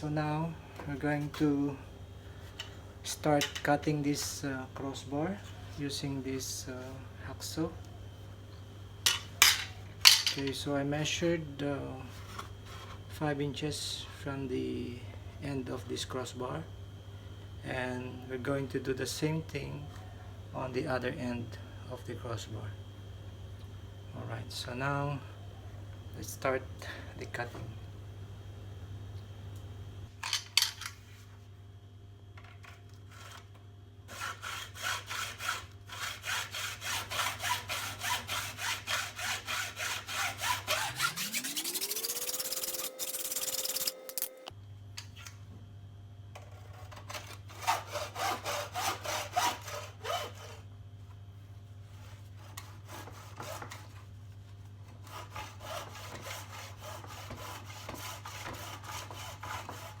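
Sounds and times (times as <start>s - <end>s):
hacksaw cutting metal: 34.1s - 44.5s, 47.1s - 50.6s.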